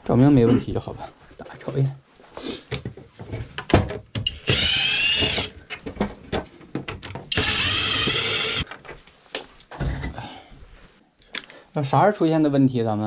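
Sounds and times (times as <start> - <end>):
cordless drill running: 4.3 - 5.5, 7.3 - 8.7.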